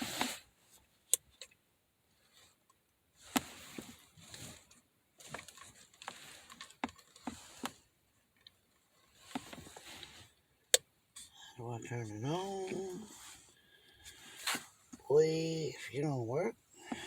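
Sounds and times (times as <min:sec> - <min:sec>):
rustling: 0:03.2 - 0:11.4.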